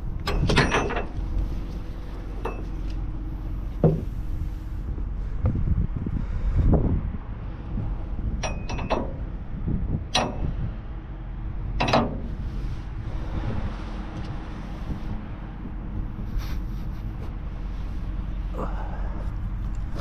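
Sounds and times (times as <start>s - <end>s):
sharp metal clangs: 0.3s - 1.1s, 8.4s - 9.2s.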